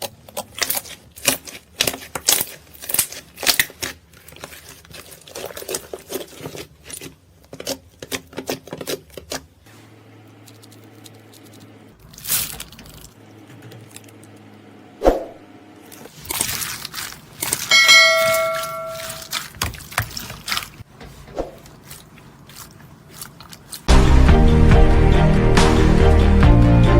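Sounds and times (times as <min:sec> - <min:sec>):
bell-like ring: 0:17.7 - 0:19.2
music: 0:23.9 - 0:26.9.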